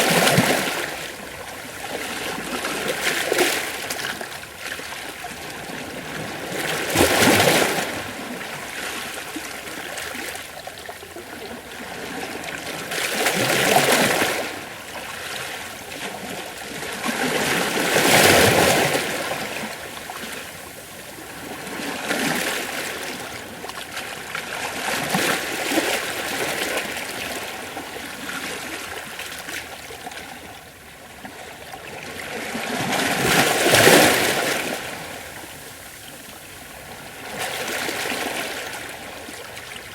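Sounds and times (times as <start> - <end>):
ocean waves washing against rocks: 0.0 - 4.2, 32.1 - 35.9.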